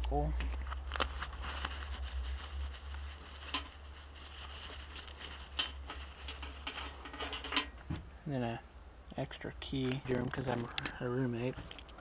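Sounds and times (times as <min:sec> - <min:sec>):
low steady rumble: 0:00.0 - 0:12.0
faint rustling: 0:00.1 - 0:08.2.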